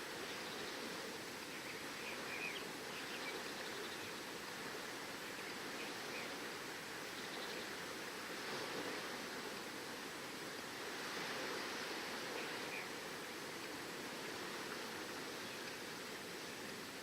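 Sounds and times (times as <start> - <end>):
wind: 0.0 - 17.0
ocean surf: 4.1 - 17.0.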